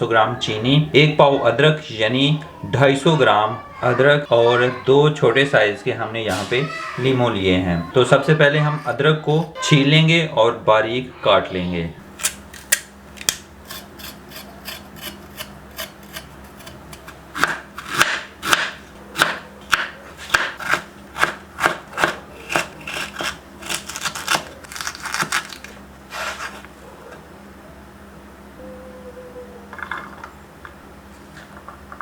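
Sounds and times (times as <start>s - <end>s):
knife scraping ginger: 13.2s - 19.4s, 20.2s - 26.7s.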